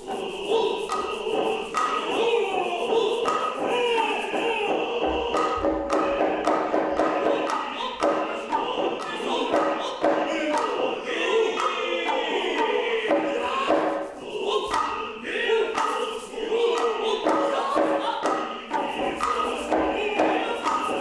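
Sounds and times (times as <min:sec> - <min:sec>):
chorus chanting in unison: 0:00.0 - 0:21.0
sharp drum strikes: 0:04.5 - 0:11.0.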